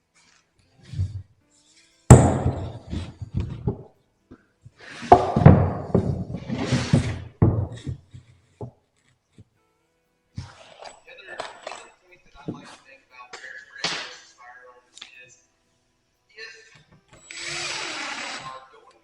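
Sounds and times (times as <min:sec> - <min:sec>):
wooden boards thunking down: 0:02.1 - 0:03.8, 0:05.0 - 0:08.0
knocks and clatter of boards: 0:02.1 - 0:03.9, 0:05.0 - 0:08.0.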